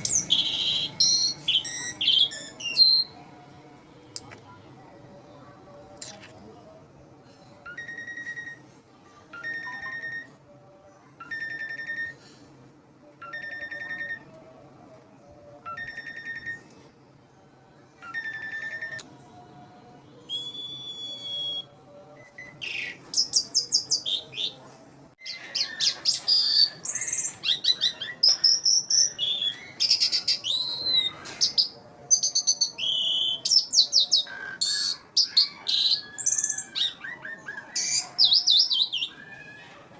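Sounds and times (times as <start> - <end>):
starling singing whistles: 20.3 - 24.1.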